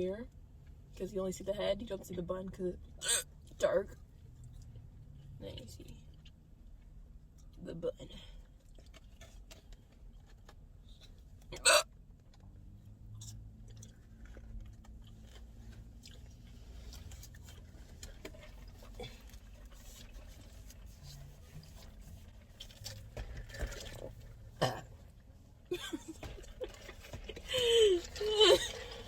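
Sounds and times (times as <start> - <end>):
girl hiccuping: 3.0 - 3.2, 11.6 - 11.8
quiet chewing with mouth clicks: 8.4 - 11.2, 13.1 - 24.4.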